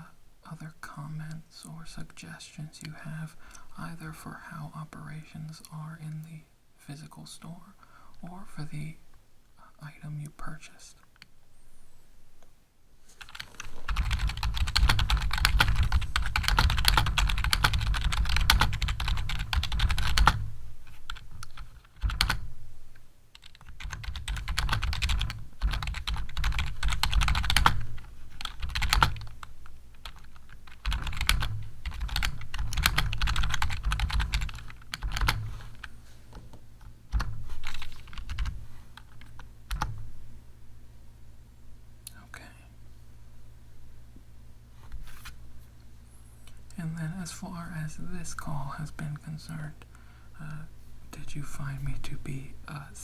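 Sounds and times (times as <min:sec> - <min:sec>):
rapid keyboard typing: 0:13.2 - 0:22.6, 0:23.3 - 0:35.9, 0:37.1 - 0:40.0.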